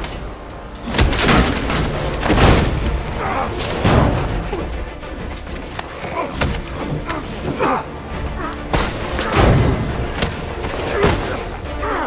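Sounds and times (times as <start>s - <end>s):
dramatic background music: 0.0s - 12.0s
punch and body impact hits: 5.5s - 7.1s, 8.7s - 11.6s.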